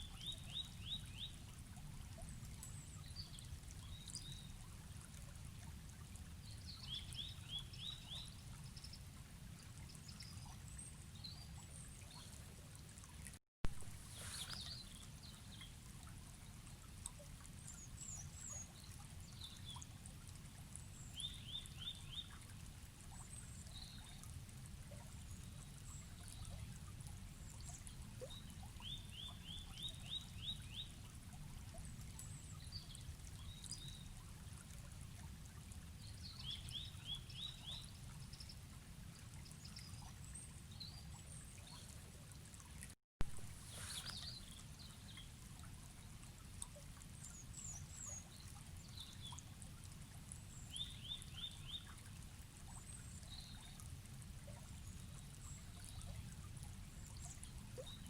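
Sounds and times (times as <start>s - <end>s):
flowing water rushing: 13.3s - 15.6s, 42.6s - 46.4s
small birds chirping: 14.0s - 15.8s, 43.5s - 45.3s.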